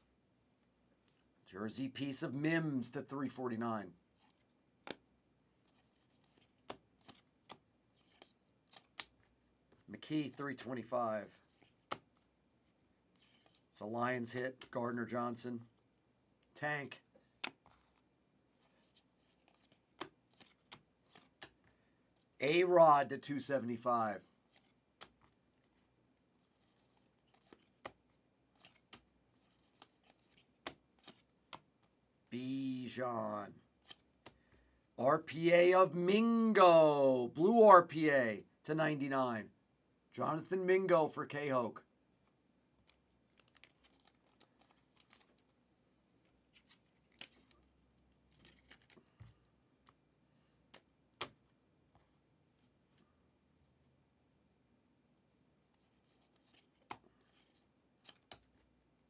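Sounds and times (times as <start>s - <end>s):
cards rustling: 5.6s - 13.7s, 17.2s - 22.4s, 23.3s - 32.0s, 33.7s - 34.7s, 42.8s - 45.6s, 46.3s - 49.4s, 55.8s - 58.7s.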